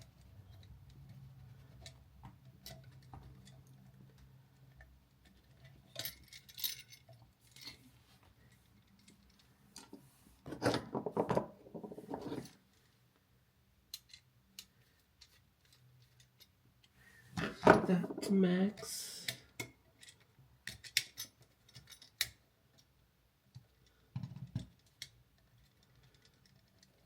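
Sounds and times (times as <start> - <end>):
wire scraping and handling: 0.2 - 12.9.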